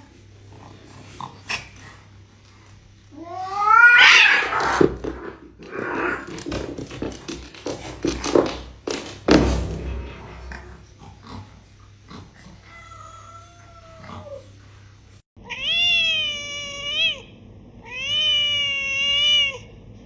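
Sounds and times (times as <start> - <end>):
cat yowling: 3.2 - 4.9, 12.6 - 14.5, 15.4 - 19.8
heavy thump: 8.9 - 11.0.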